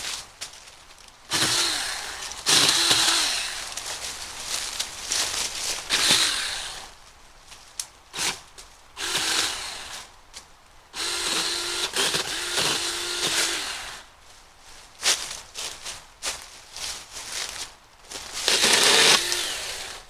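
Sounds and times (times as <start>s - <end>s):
mini chainsaw cutting brush: 1.3s - 4.2s, 5.7s - 7.0s, 9.0s - 10.1s, 11.0s - 14.1s, 18.3s - 20.0s.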